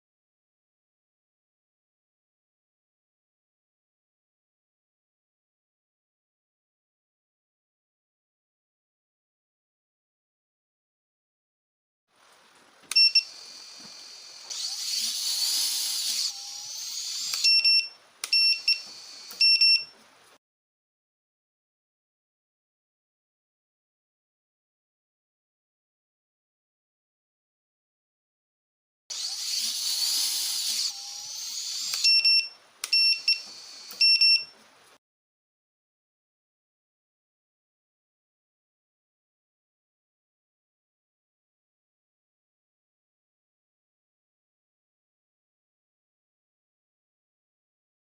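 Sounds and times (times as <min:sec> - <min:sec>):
short high electronic beeps: 0:13.0 - 0:13.3, 0:17.3 - 0:19.9, 0:31.8 - 0:34.5
drone motors whining: 0:13.2 - 0:17.5, 0:29.1 - 0:32.1
shrill electronic beeps: 0:31.9 - 0:34.5.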